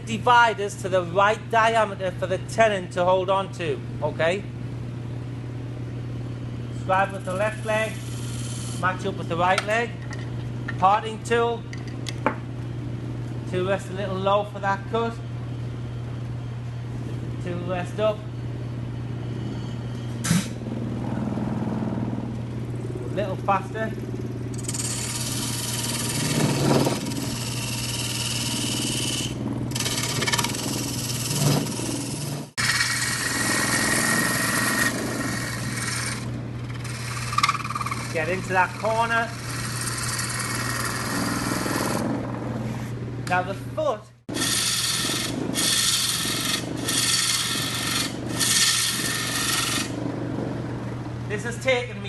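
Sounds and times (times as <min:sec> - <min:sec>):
turning tool cutting wood: 0:07.2 - 0:08.9, 0:24.5 - 0:42.2, 0:44.3 - 0:50.0
lathe motor hum: 0:07.2 - 0:09.0, 0:20.7 - 0:42.6, 0:44.3 - 0:51.2
lathe tool cutting wood hiss: 0:44.4 - 0:49.9.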